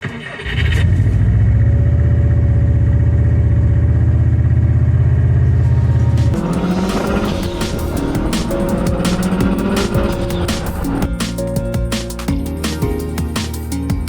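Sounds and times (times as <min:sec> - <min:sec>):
engine idling: 0:02.3 - 0:12.0.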